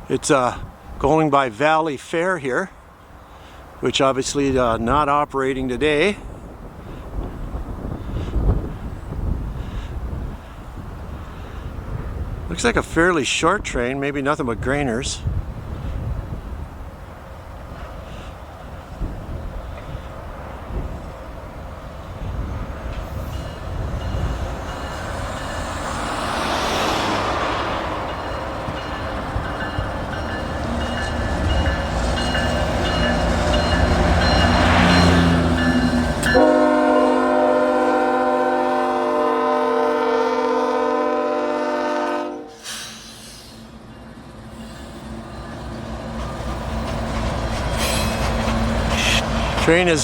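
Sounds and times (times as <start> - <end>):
rolling train cars rumble: 2.7 - 50.0
diesel locomotive rumble: 2.8 - 50.0
train horn blast: 36.2 - 42.7.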